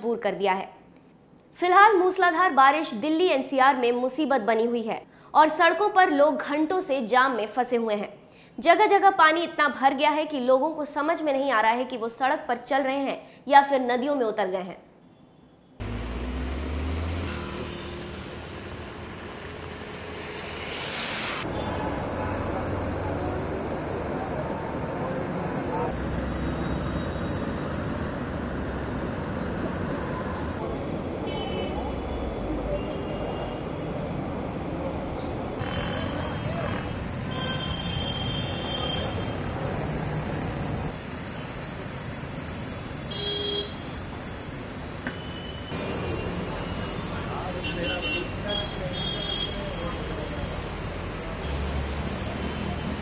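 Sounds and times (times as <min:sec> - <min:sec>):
tyres hissing on wet road: 0:15.8 - 0:24.1, 0:37.6 - 0:53.0
vehicle engine humming: 0:15.8 - 0:26.6
rain: 0:49.4 - 0:53.0.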